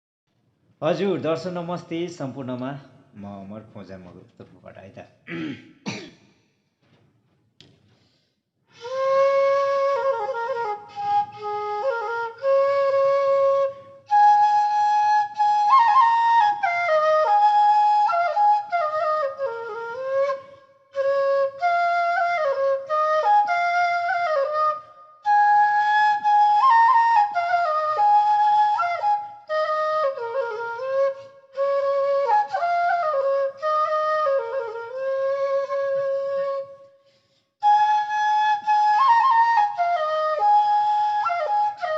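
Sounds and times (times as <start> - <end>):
bamboo flute melody: 8.7 - 37.0, 37.6 - 41.9.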